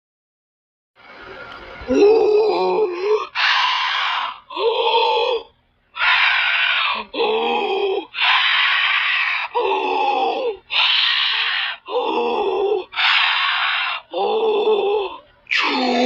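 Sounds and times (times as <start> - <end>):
cartoon voice ah sounds: 14.1 - 16.0.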